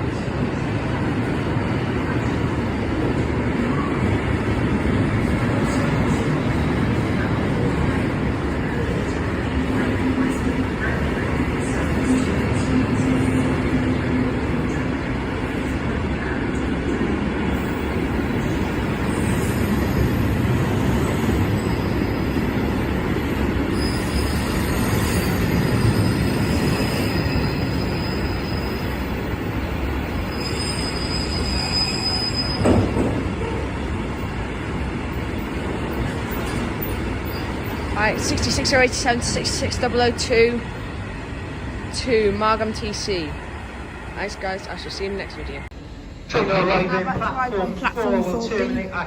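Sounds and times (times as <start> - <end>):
train wheels rumbling on rails: 0.0 - 45.9
high-pitched wheel squeals: 23.7 - 29.0, 30.2 - 32.8
loud train clunk: 32.4 - 33.5.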